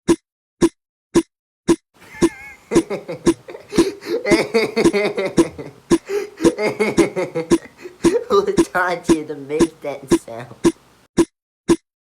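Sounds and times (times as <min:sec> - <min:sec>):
wavering voice-like sounds: 0:02.0 - 0:10.8.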